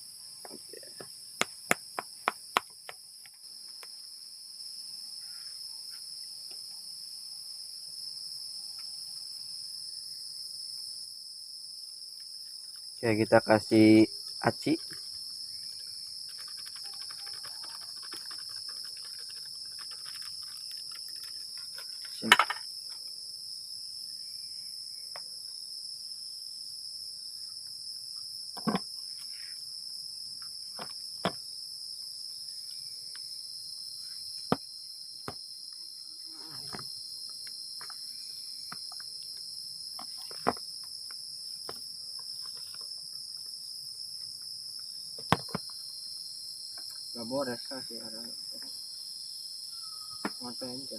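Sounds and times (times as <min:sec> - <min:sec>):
crickets chirping: 0:00.0 - 0:50.9
sharp knocks and clatters: 0:21.8 - 0:22.7.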